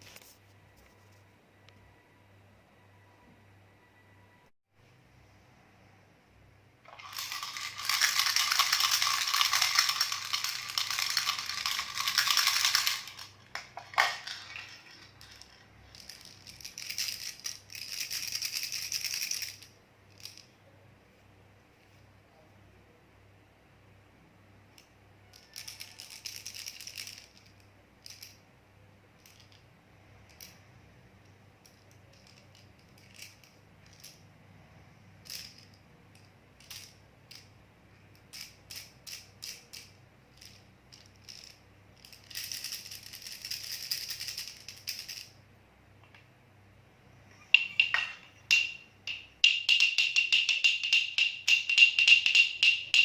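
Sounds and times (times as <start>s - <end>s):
baby rattle shaking: 6.9s - 20.5s, 25.3s - 28.4s, 29.2s - 29.6s, 31.6s - 34.2s, 35.2s - 37.5s, 38.2s - 45.4s, 47.5s - 53.0s.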